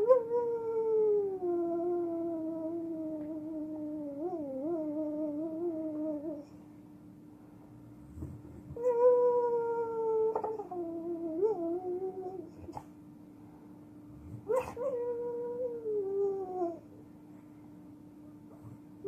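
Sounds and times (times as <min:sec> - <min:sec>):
dog howling in sleep: 0:00.0 - 0:06.6, 0:08.7 - 0:12.8, 0:14.3 - 0:16.9
steady low hum: 0:00.0 - 0:19.0.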